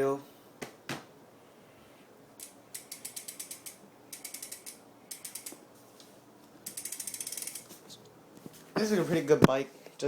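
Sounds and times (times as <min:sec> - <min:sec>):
bike hub ratchet clicking: 0:02.4 - 0:05.6, 0:06.6 - 0:07.8.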